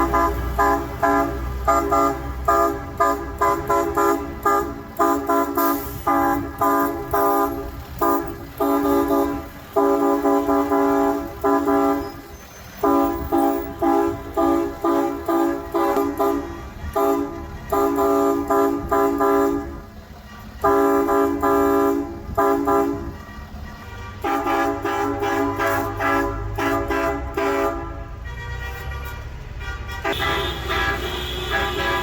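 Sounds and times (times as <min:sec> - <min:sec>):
engines rumbling: 0:00.0 - 0:32.0
higher-pitched horn: 0:00.0 - 0:32.0
vehicle horns honking: 0:00.0 - 0:32.0.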